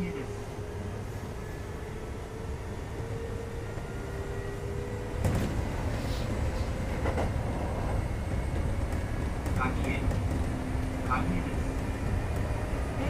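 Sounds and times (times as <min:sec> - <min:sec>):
train interior rumble with whine: 0:00.0 - 0:13.0
train wheel knocks: 0:08.5 - 0:10.6.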